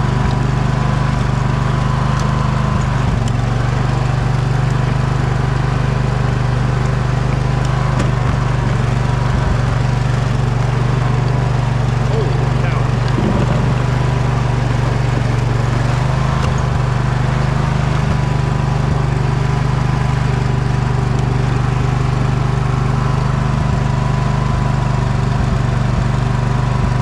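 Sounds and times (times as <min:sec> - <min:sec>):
riding mower engine running: 0:00.0 - 0:27.0
thin steady whine: 0:11.6 - 0:18.2.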